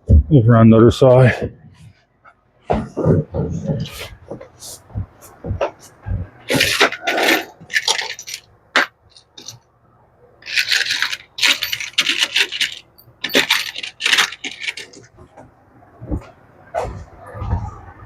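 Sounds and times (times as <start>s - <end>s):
metal screws clinking and rattling: 6.5s - 9.6s, 10.4s - 15.1s.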